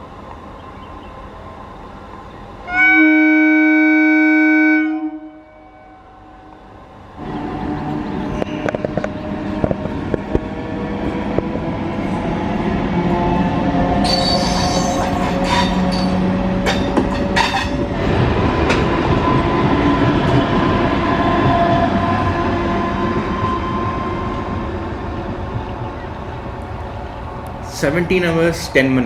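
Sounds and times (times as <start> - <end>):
train rumbling on track: 0.0 - 29.0
train wheels squealing: 14.0 - 16.2.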